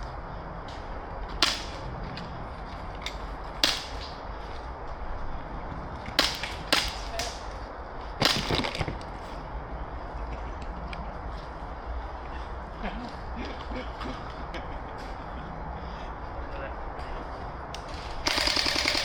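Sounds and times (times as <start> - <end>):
airsoft guns firing: 1.4 - 1.9, 3.0 - 4.3, 6.1 - 7.6, 8.2 - 9.1, 18.2 - 19.0.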